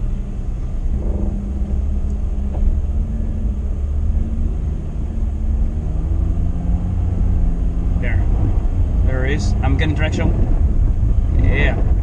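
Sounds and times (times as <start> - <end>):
car engine rumble in cabin: 0.0 - 12.0.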